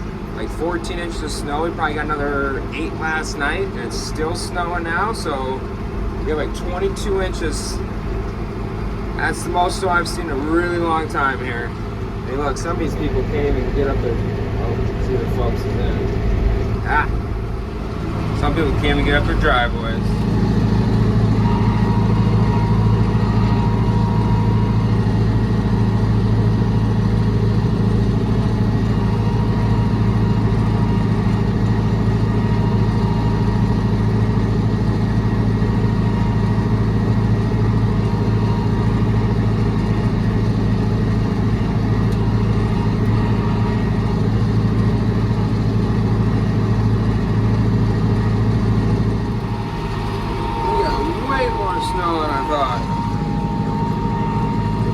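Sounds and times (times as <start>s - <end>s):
vehicle engine droning: 0.0s - 54.9s
faint high whine: 9.2s - 26.2s, 49.0s - 54.9s.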